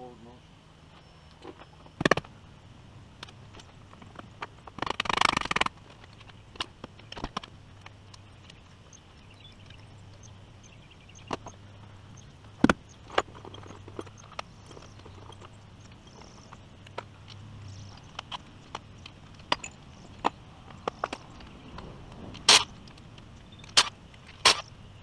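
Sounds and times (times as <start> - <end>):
hand tools clicking and knocking: 12.6 - 24.7.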